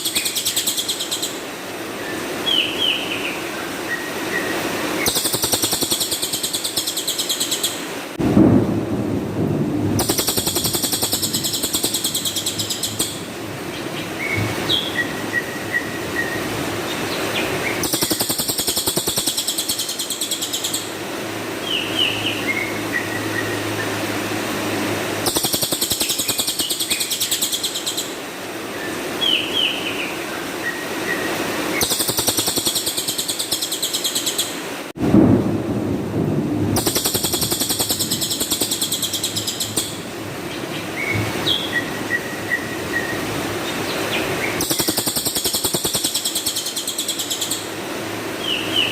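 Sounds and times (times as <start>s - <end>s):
bird chirps: 0.0s - 1.4s, 3.9s - 7.8s, 10.0s - 13.3s, 17.7s - 20.9s, 25.2s - 28.2s, 31.8s - 34.6s, 36.8s - 43.2s, 44.1s - 47.7s
songbird trilling: 0.0s - 1.4s, 5.0s - 7.8s, 10.0s - 13.3s, 17.6s - 20.9s, 25.2s - 28.2s, 31.8s - 34.6s, 36.8s - 43.2s, 44.1s - 47.7s.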